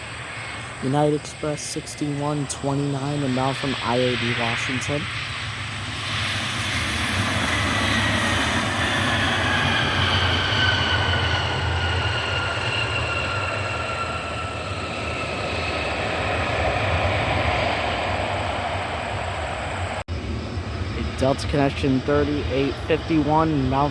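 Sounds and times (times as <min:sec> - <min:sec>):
jet engine rumble and whine: 0:00.0 - 0:23.9.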